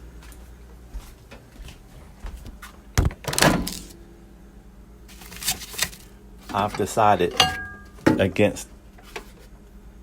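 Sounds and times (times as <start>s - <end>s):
microwave door latch clunk: 3.0s - 3.8s
microwave door rattle: 3.0s - 3.9s, 6.5s - 8.3s.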